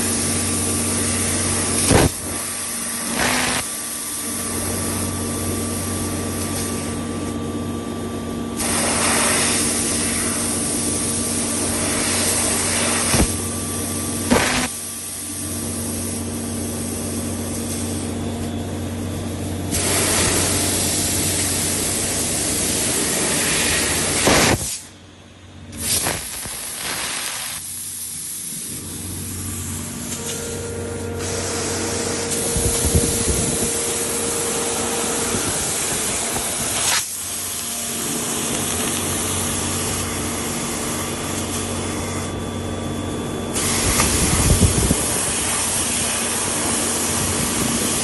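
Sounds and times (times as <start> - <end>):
loud gas hiss: 0.0 - 3.8, 8.6 - 13.4, 14.3 - 16.2, 19.7 - 24.9, 25.7 - 30.2, 31.2 - 37.6, 43.5 - 48.0
machine hum: 0.0 - 25.8, 27.8 - 48.0.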